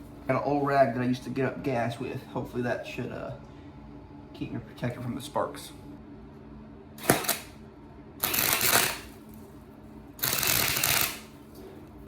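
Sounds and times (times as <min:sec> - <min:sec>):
arc welding crackle: 0:08.2 - 0:09.2, 0:10.2 - 0:11.4.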